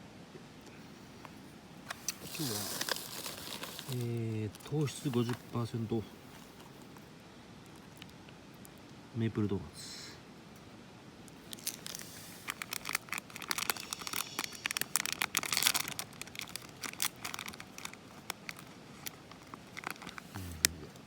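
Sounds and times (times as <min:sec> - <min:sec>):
plastic wrapper crinkling: 0:01.9 - 0:07.0, 0:11.3 - 0:21.0.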